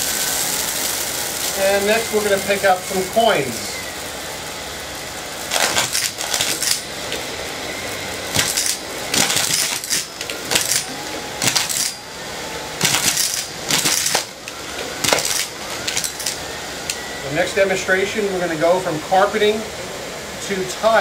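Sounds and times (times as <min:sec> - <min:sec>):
vacuum cleaner running: 0:00.0 - 0:21.0
coins rattling into nozzle: 0:05.5 - 0:06.9, 0:08.4 - 0:12.0, 0:12.8 - 0:14.3, 0:15.0 - 0:16.4.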